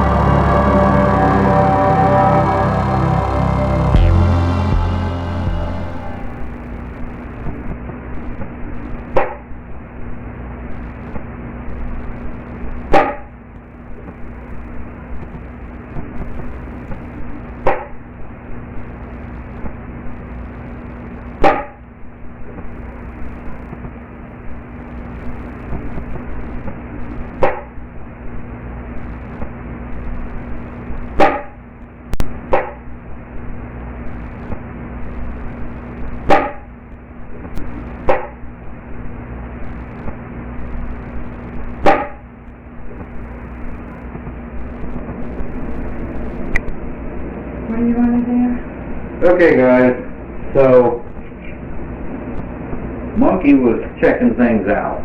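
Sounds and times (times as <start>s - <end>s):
low hum: 0.0s - 7.6s.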